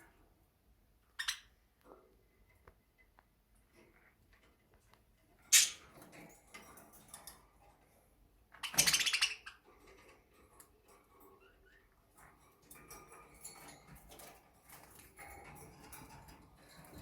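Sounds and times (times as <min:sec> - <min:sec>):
budgerigars fluttering in cage: 0:08.6 - 0:17.0.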